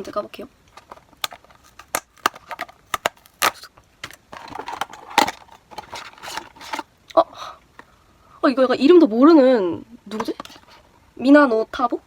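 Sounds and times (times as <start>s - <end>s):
cardboard packaging rustling and tearing: 0.7s - 6.9s.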